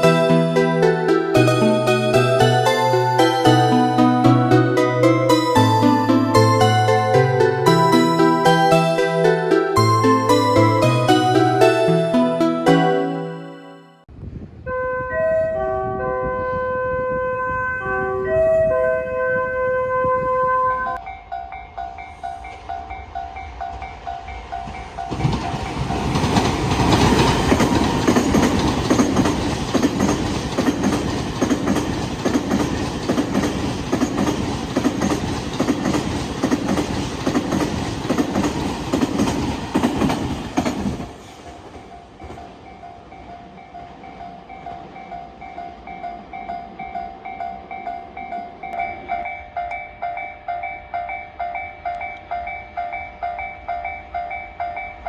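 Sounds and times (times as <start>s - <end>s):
level-crossing warning bell: 0.0s - 14.0s, 20.9s - 41.0s, 41.7s - 55.0s
train wheels clattering over rail joints: 24.7s - 42.8s.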